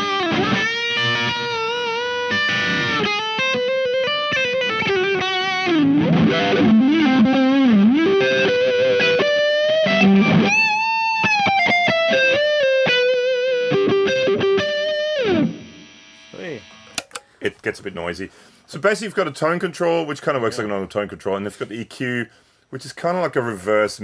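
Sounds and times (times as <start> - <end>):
distorted electric guitar lead: 0.0 - 17.2.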